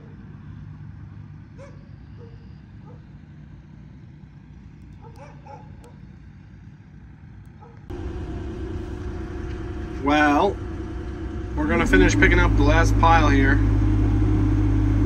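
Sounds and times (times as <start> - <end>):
low engine rumble: 0.0 - 15.0
dog yipping and barking: 1.6 - 3.0, 5.0 - 6.0, 7.6 - 7.9.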